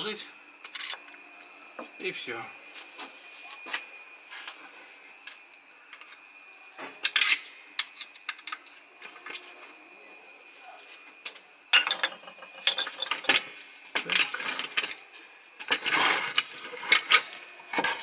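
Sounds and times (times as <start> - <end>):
metallic clinks and clatter: 11.7 - 15.1.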